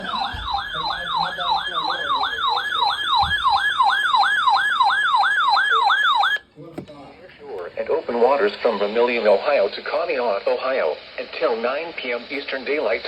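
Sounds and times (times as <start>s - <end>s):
electronic siren yelping: 0.0s - 6.4s.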